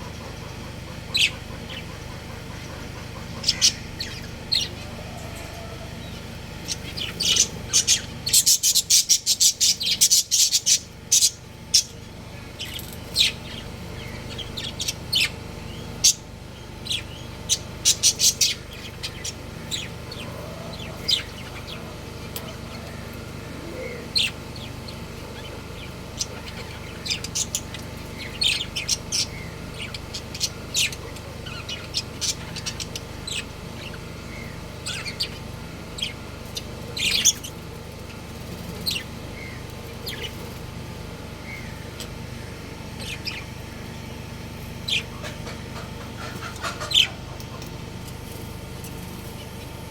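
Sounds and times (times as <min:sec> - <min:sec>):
budgerigars chirping: 0:00.0 - 0:40.6, 0:41.4 - 0:44.1, 0:44.8 - 0:47.8.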